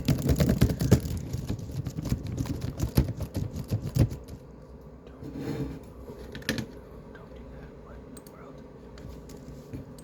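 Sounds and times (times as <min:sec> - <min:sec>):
laptop keyboard typing: 0:00.0 - 0:04.4.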